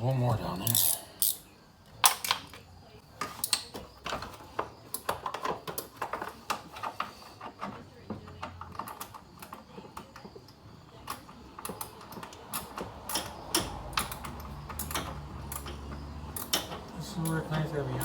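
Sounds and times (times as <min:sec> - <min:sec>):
hand tools tapping metal: 0:04.9 - 0:18.0.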